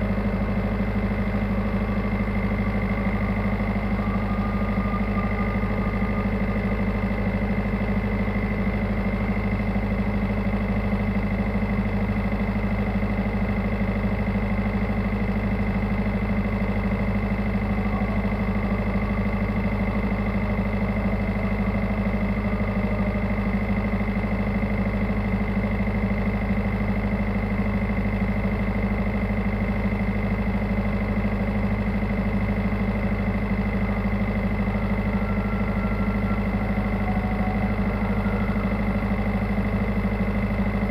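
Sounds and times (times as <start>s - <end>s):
boat engine droning: 0.0s - 40.9s
thin steady whine: 0.0s - 40.9s.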